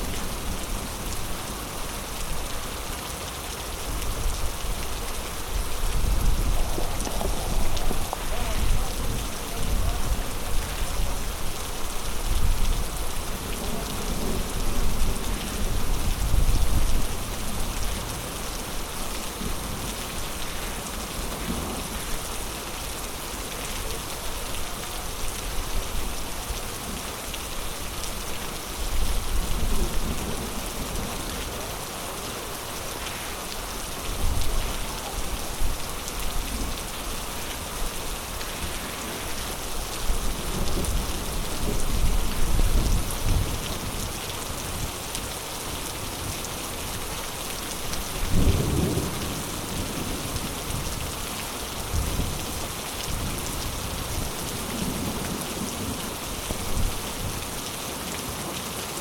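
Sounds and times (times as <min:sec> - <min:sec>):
heavy rain pouring: 0:00.0 - 0:59.0
thunder rumbles: 0:04.1 - 0:18.3, 0:48.1 - 0:51.0.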